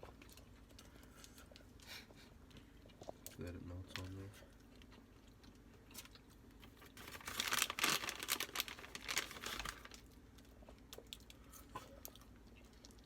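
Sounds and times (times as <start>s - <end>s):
food packaging crinkling: 5.4s - 13.0s.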